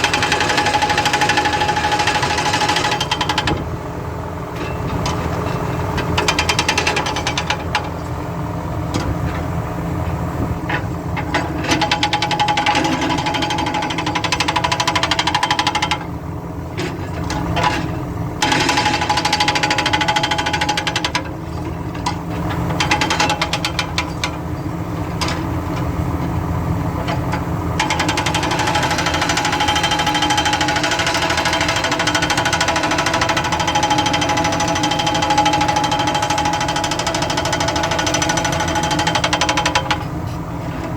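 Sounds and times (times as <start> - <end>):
hydraulic breaker hammering: 0.0 - 3.7, 18.4 - 21.2, 27.8 - 40.1
excavator diesel engine: 0.0 - 40.9.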